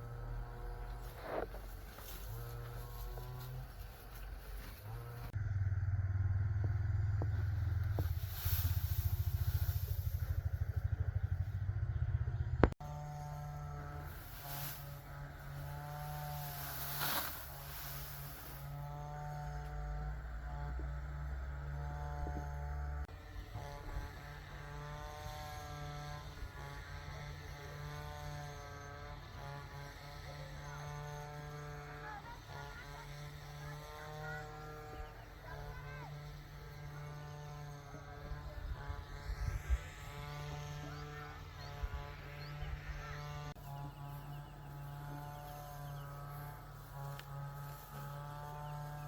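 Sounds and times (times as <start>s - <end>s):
deep low hum: 0.0s - 26.8s
small engine running: 0.0s - 49.0s.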